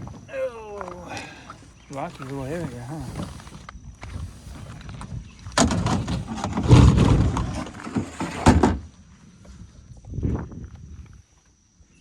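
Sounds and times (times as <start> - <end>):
kayak hull scraping over rocks: 0.9 - 8.9.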